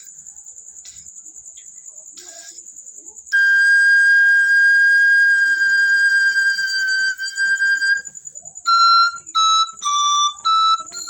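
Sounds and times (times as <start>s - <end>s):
pan flute high note: 3.3s - 8.1s, 8.7s - 11.0s.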